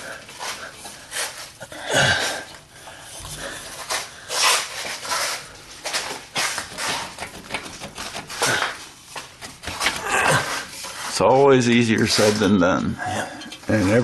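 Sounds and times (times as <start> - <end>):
metal pipe scraping and rubbing: 2.3 - 7.4, 10.3 - 14.0.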